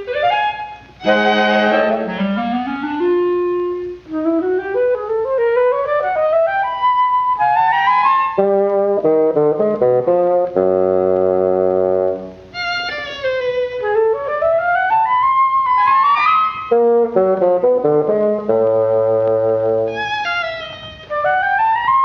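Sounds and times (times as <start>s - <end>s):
orchestral cartoon music: 1.0s - 3.2s.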